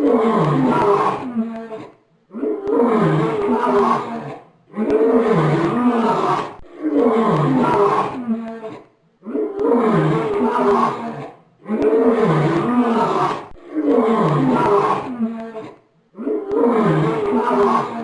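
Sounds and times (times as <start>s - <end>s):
bear growling: 0.0s - 18.0s.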